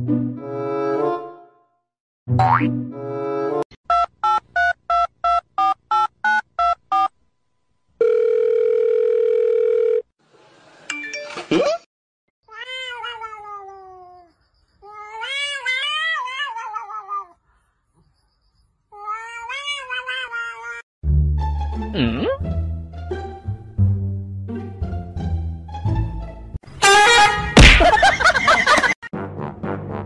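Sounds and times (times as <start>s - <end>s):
steady telephone-like tone: 8.0s - 10.0s
cat meowing: 12.5s - 17.4s, 18.9s - 20.8s.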